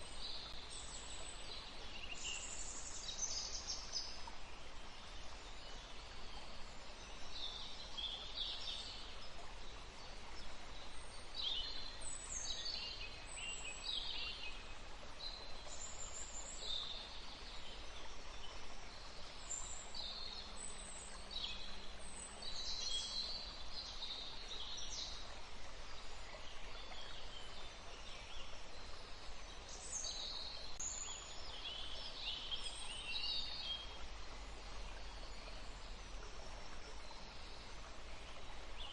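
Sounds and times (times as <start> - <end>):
low hiss of water or wind: 0.0 - 38.9.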